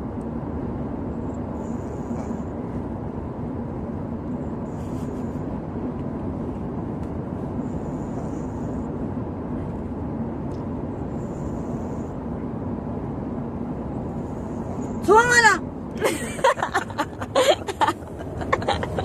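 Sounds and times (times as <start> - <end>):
steady low hum: 0.0 - 19.0
soft snoring breaths: 1.6 - 2.6, 7.5 - 9.0, 11.0 - 12.3.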